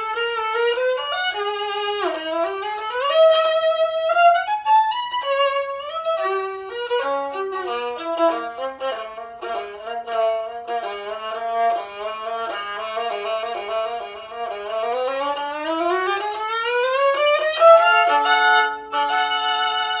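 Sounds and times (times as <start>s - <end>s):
solo violin playing: 0.0s - 20.0s.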